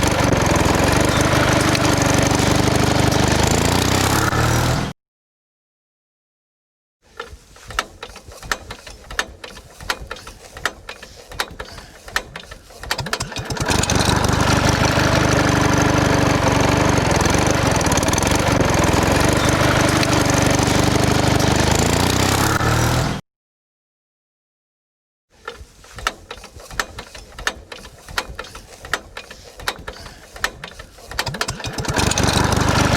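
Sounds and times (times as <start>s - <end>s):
small engine running: 0.0s - 4.9s, 11.0s - 23.2s, 26.4s - 32.9s
sharp irregular clicks and knocks: 7.1s - 14.0s, 25.4s - 32.8s.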